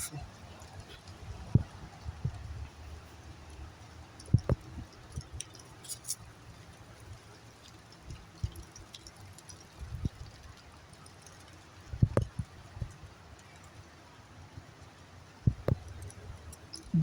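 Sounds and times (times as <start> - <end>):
wind buffeting microphone: 0.0 - 5.5, 11.8 - 13.1, 15.4 - 17.0.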